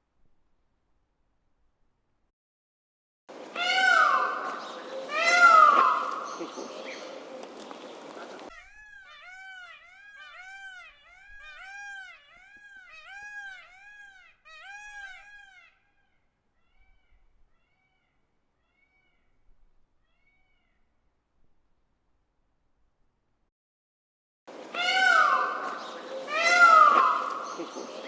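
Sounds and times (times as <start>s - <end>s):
peacock calling: 3.3s - 19.4s, 24.5s - 28.0s.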